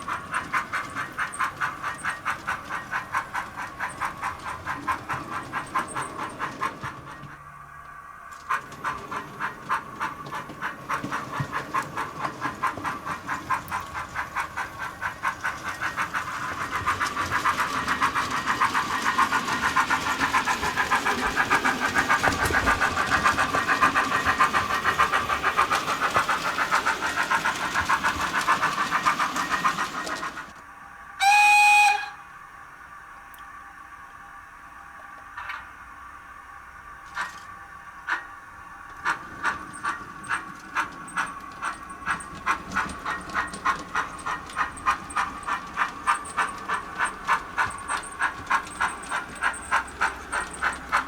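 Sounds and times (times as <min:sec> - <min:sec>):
model locomotive steam chuffs: 0:00.0 - 0:51.0
short whistle blast: 0:31.2 - 0:32.3.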